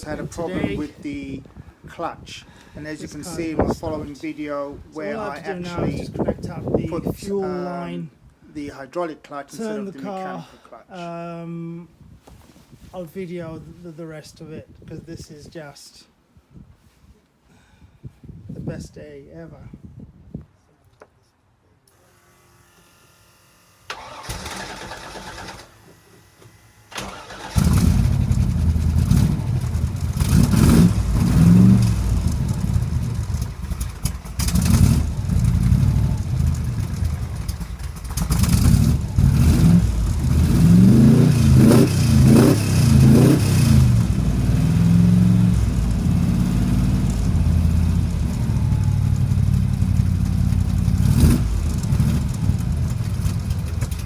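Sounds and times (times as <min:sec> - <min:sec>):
car engine revving: 0:27.0 - 0:54.0.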